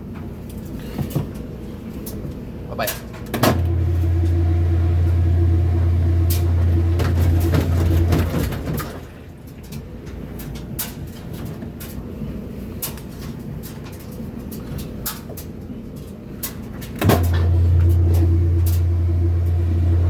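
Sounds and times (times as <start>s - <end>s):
washing machine motor humming: 3.4s - 9.5s, 17.0s - 20.0s
low rumble: 3.6s - 8.9s, 17.2s - 20.0s.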